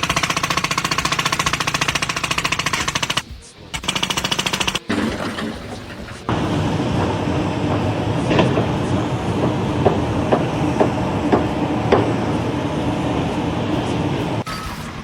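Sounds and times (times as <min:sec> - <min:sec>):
mechanical rumble: 0:03.4 - 0:15.0.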